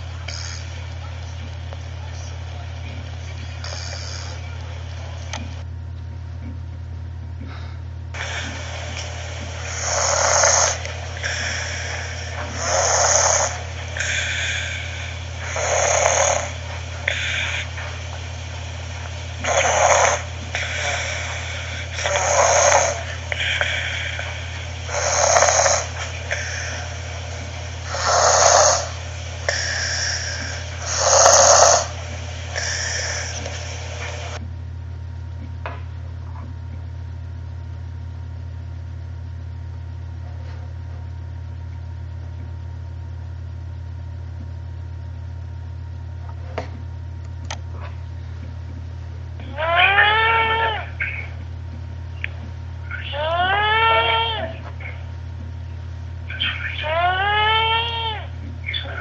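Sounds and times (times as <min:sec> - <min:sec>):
person snoring: 0:00.0 - 0:00.8, 0:03.6 - 0:04.4, 0:08.2 - 0:34.4
steady low hum: 0:00.0 - 0:59.0.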